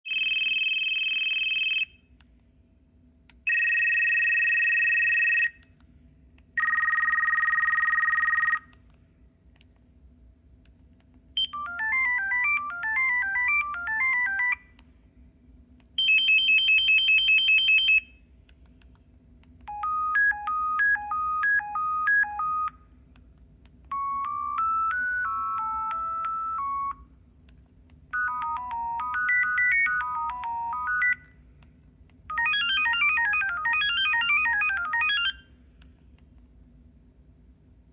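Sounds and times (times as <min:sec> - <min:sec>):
two-tone phone ringing: 0:00.1 - 0:01.9, 0:03.5 - 0:05.6, 0:06.6 - 0:08.7, 0:11.4 - 0:14.6, 0:19.7 - 0:22.8, 0:23.9 - 0:27.0, 0:28.2 - 0:31.3, 0:32.3 - 0:35.5
beeping ringtone melodies: 0:11.4 - 0:14.6, 0:19.7 - 0:22.8, 0:23.9 - 0:27.0, 0:28.2 - 0:31.3, 0:32.3 - 0:35.4.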